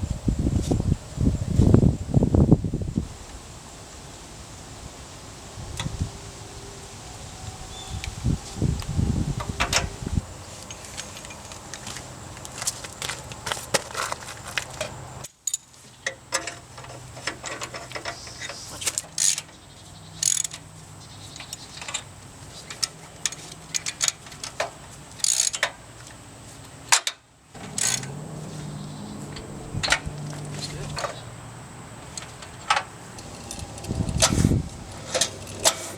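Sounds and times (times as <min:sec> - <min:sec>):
light metallic clicks and clinks: 0:14.0 - 0:19.5, 0:20.2 - 0:20.7, 0:27.0 - 0:31.2, 0:32.1 - 0:35.9
low rumble: 0:33.2 - 0:35.7.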